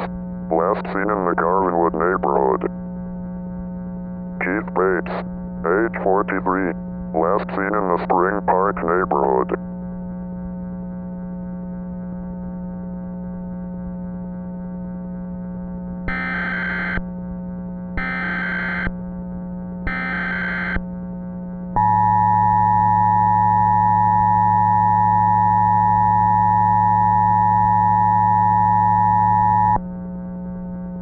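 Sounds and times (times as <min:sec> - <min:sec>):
data tone bursts: 0:18.0 - 0:18.9, 0:19.9 - 0:20.8, 0:21.8 - 0:29.8.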